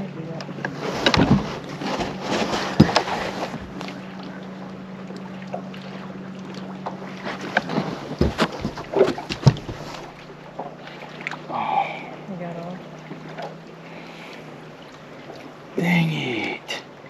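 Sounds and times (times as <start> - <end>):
knocks and clunks on boat: 0.0 - 16.1
low motor hum: 0.0 - 17.0.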